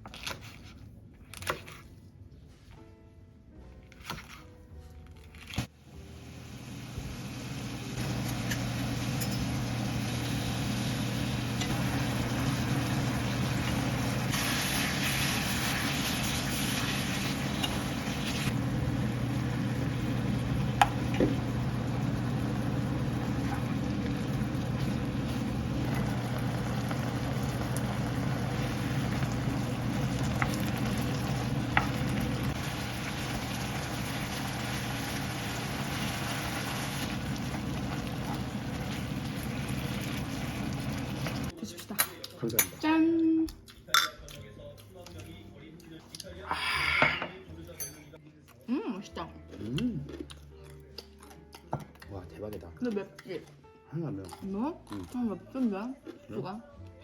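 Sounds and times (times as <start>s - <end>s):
food sizzling in a frying pan: 6.2s - 41.5s.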